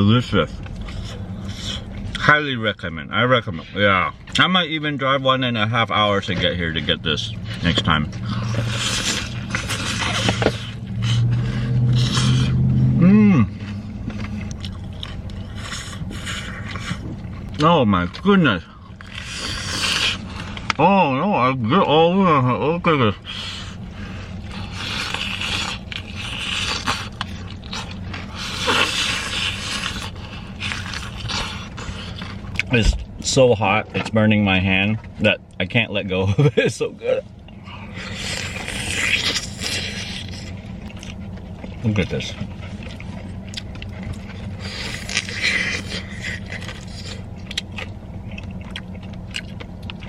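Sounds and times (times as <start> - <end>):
low hum: 0.0 - 50.0
crunching of fried chicken crust: 5.9 - 20.8, 23.3 - 33.2, 37.4 - 50.0.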